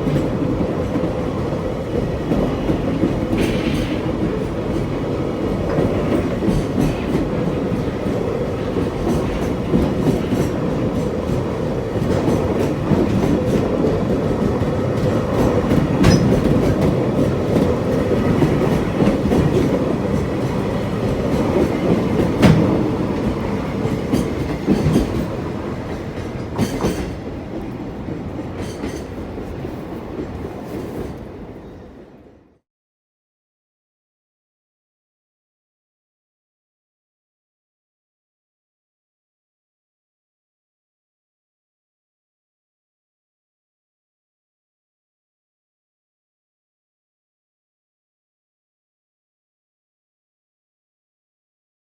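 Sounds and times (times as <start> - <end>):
freight train wheels clattering: 0.0 - 31.1.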